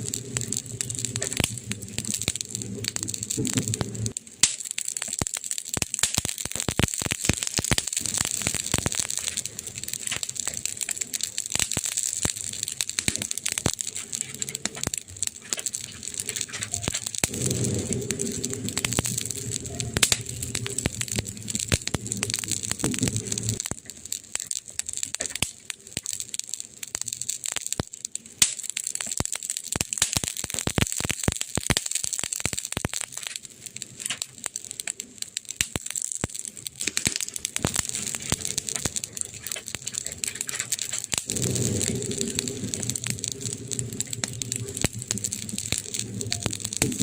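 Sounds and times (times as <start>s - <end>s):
wood fire crackling: 0.0s - 47.0s
low pitched hum: 16.8s - 23.6s.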